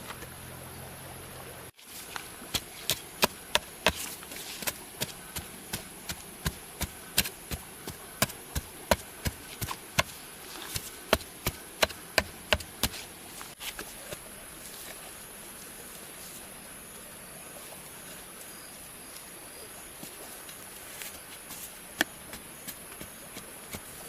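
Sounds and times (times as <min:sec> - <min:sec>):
tool striking bamboo: 0:02.5 - 0:07.6, 0:08.2 - 0:10.2, 0:10.8 - 0:13.0.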